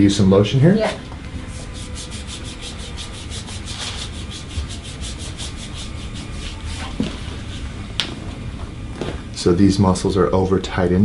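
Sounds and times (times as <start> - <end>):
hands rubbing on skin: 1.5 - 7.6.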